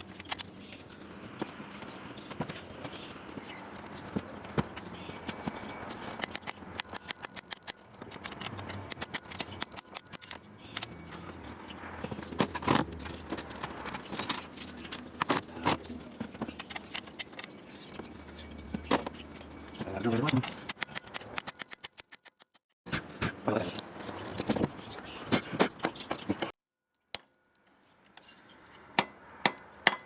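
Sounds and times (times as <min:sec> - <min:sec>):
metal tools clicking and clanking: 0:06.0 - 0:22.0.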